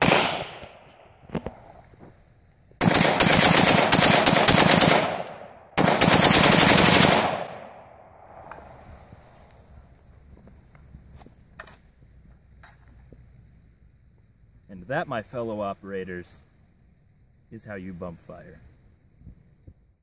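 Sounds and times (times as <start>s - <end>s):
rapid rifle shots with echo: 0.0s - 1.0s, 2.8s - 8.3s.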